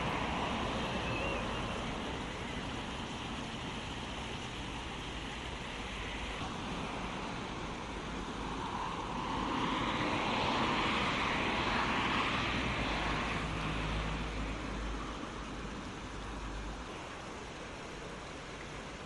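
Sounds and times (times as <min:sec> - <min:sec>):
vehicle passing on highway: 0:00.0 - 0:17.2.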